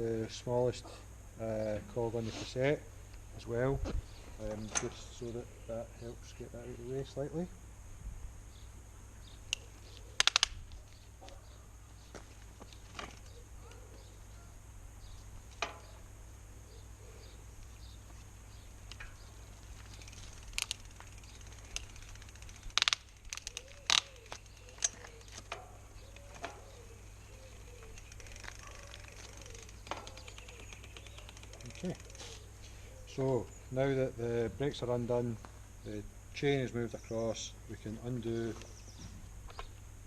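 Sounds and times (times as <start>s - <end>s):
bicycle derailleur clicking: 10.2s - 10.6s, 18.6s - 32.4s.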